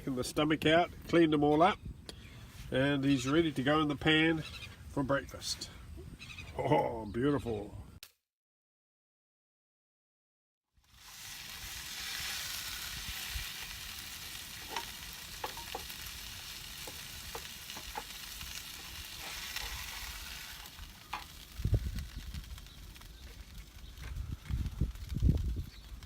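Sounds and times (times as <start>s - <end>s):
fat popping and crackling: 10.8s - 26.0s
fish sizzling in a pan: 10.8s - 26.0s.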